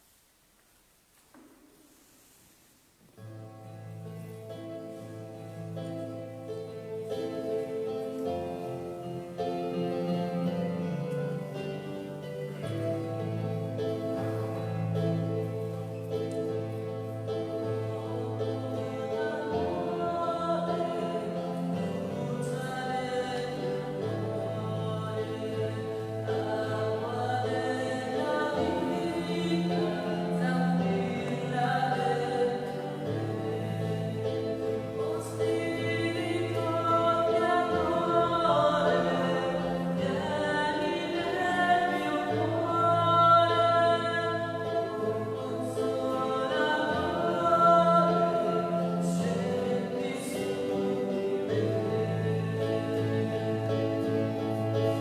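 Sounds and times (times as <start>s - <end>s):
choir singing held chords: 16.6s - 55.0s.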